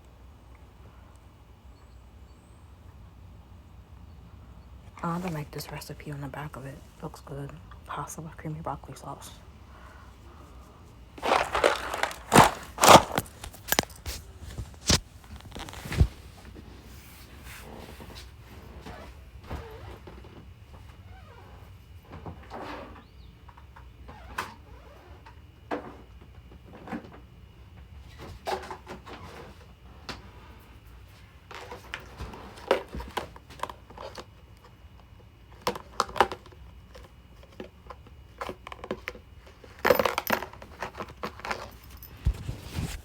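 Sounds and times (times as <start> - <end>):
objects knocking and clinking: 11.2 - 14.2, 39.8 - 42.4
clatter of objects: 11.2 - 16.6, 28.0 - 34.8, 35.5 - 43.0.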